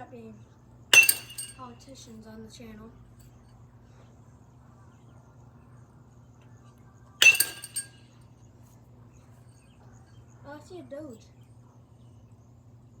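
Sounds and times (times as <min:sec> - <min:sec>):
bat hitting baseball ping: 0:01.0 - 0:01.6, 0:07.2 - 0:08.0.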